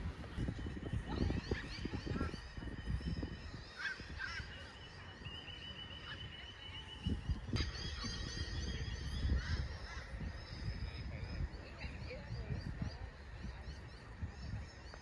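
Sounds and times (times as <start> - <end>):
birds chirping: 0.0 - 15.0
low microphone rumble: 0.0 - 15.0
birds honking: 3.5 - 6.4.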